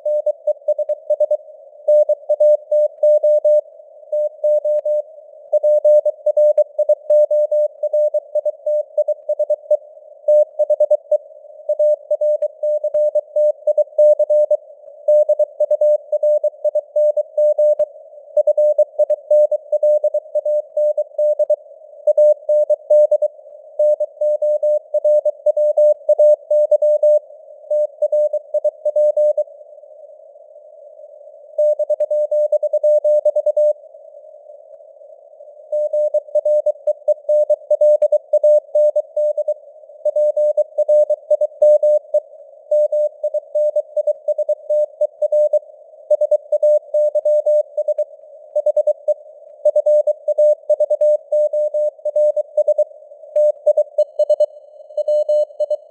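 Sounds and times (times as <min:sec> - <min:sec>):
morse code tone: 0:53.4 - 0:55.9.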